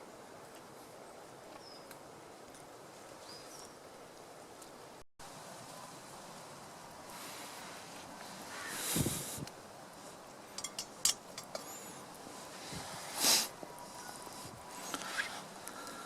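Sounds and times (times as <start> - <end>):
campfire hissing and crackling: 0.0 - 16.0
breathy rushes of air: 8.4 - 9.5.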